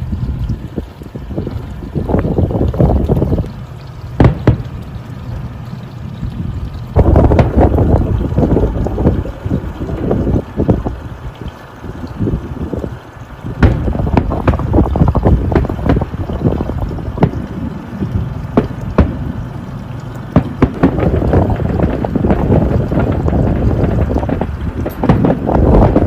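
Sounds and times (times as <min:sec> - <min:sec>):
wind buffeting microphone: 0:00.0 - 0:26.0
fireworks bangs: 0:04.1 - 0:04.9, 0:07.0 - 0:07.8, 0:13.6 - 0:19.4, 0:20.3 - 0:26.0.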